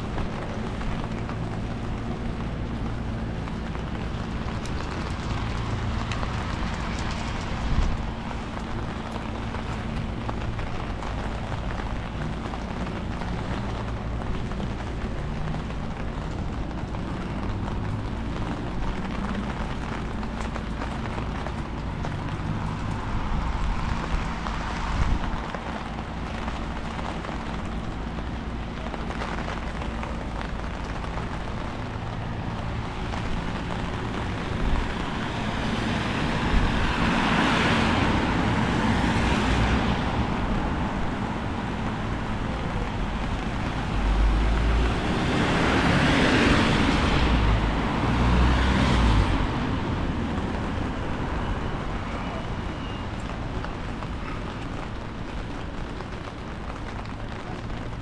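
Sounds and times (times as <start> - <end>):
faint traffic hum: 0.0 - 58.0
wind rumble on microphone: 0.0 - 58.0
hiss of vehicle on wet road: 20.2 - 58.0.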